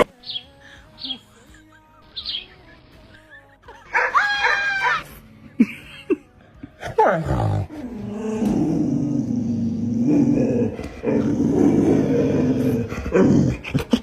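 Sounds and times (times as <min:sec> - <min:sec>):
dog crying: 0:03.9 - 0:05.1
dog growling: 0:06.8 - 0:14.0.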